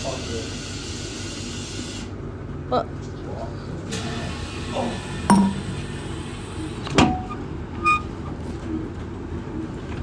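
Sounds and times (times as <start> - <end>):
low machine hum: 4.9 - 9.8
bottle knocking in vending machine: 5.3 - 5.8.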